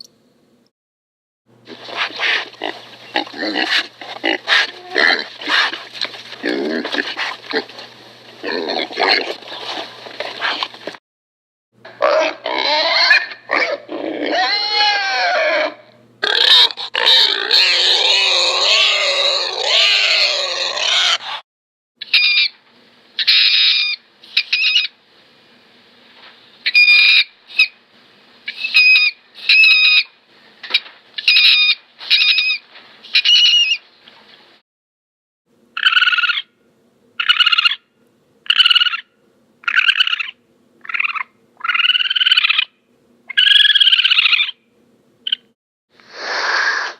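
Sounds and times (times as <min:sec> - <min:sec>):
overlapping animal calls: 0:01.7 - 0:10.4, 0:30.7 - 0:32.6, 0:35.8 - 0:36.5, 0:37.2 - 0:37.8, 0:38.5 - 0:42.7, 0:43.3 - 0:44.6.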